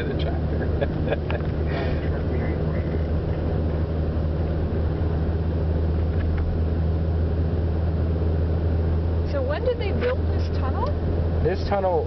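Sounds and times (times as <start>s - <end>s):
car engine drone: 0.0s - 12.0s
road noise: 0.0s - 12.0s.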